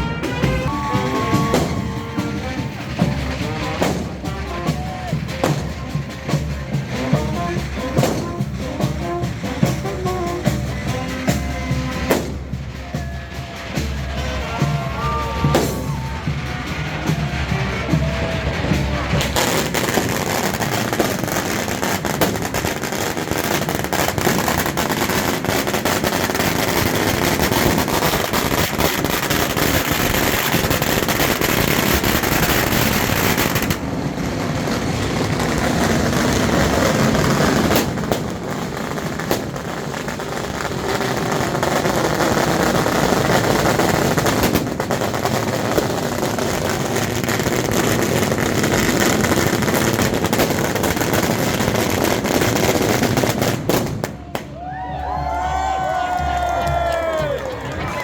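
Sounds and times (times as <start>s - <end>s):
firecrackers crackling: 0.0s - 58.0s.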